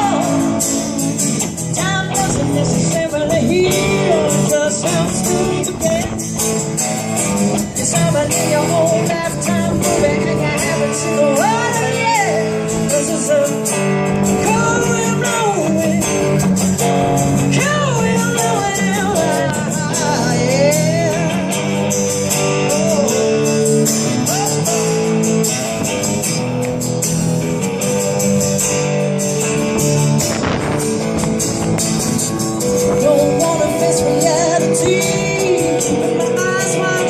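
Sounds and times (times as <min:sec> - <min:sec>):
strummed guitar chords: 0:00.0 - 0:37.0.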